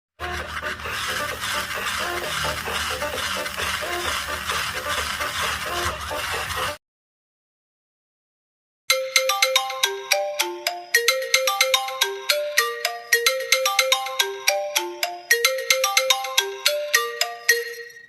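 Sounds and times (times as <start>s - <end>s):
phone ringtone melody: 8.9s - 18.0s.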